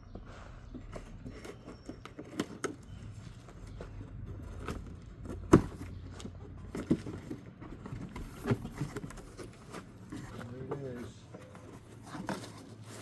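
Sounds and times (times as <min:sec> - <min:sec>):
packaging and cabinet knocks: 0:04.6 - 0:09.4.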